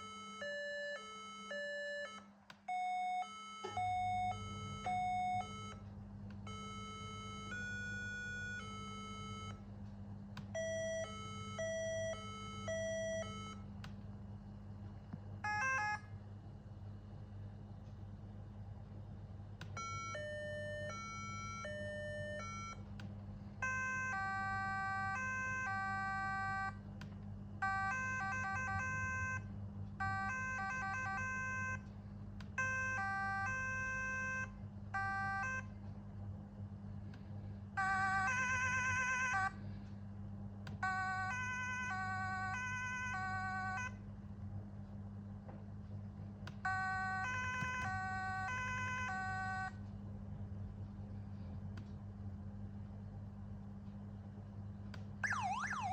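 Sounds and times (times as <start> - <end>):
electronic siren tones: 0.0 - 5.8, 10.6 - 13.6, 23.6 - 26.8, 27.6 - 31.9, 32.6 - 35.7, 37.8 - 39.6, 40.8 - 44.0, 46.7 - 49.8, 55.2 - 55.9
low electrical hum: 0.0 - 55.9.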